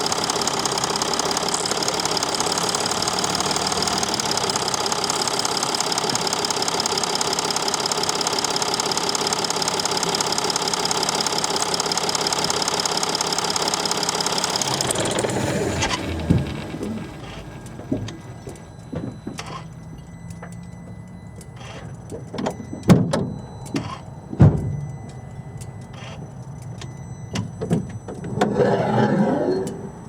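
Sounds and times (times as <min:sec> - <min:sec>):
diesel engine clattering: 0:00.0 - 0:30.0.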